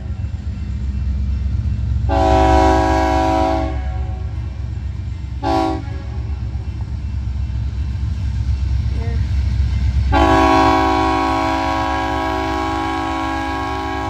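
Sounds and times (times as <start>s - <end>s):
train rumbling: 0.0s - 14.0s
locomotive air horn: 2.1s - 4.2s, 5.4s - 6.1s, 10.1s - 14.0s.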